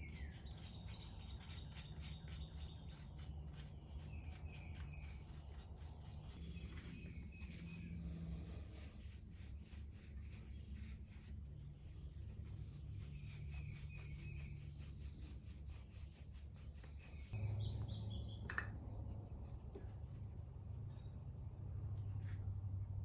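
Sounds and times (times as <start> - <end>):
birds chirping: 0.0 - 8.6, 16.7 - 22.3.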